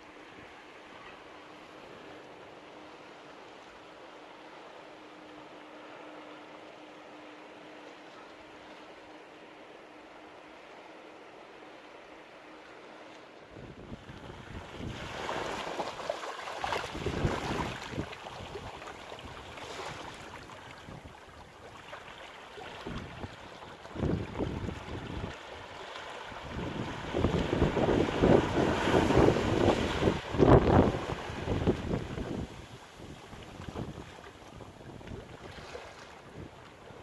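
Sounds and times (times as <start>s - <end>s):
sea surf washing in: 8.9s - 21.1s, 21.7s - 37.0s
wind buffeting microphone: 13.5s - 15.7s, 16.6s - 21.2s, 22.8s - 25.4s, 26.4s - 36.6s
waves breaking on rocky shore: 13.5s - 37.0s.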